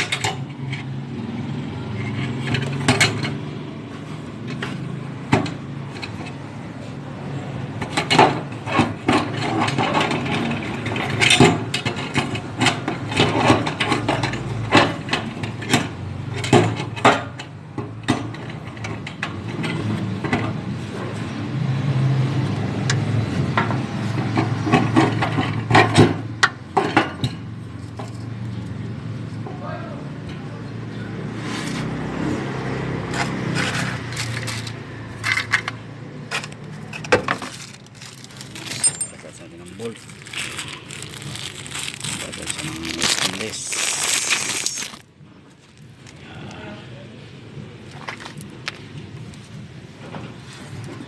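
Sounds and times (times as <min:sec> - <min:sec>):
hand tools clanking on metal: 0:38.5 - 0:39.5.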